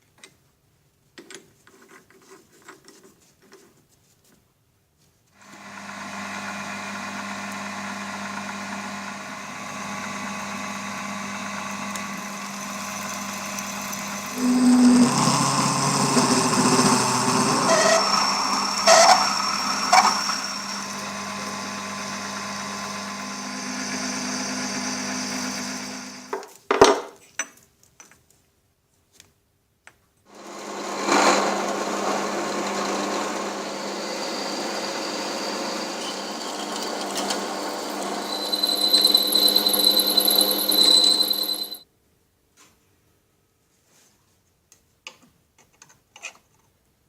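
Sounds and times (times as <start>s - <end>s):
workshop machine motor hum: 5.5s - 26.3s, 30.3s - 41.8s
high whine: 33.3s - 41.8s.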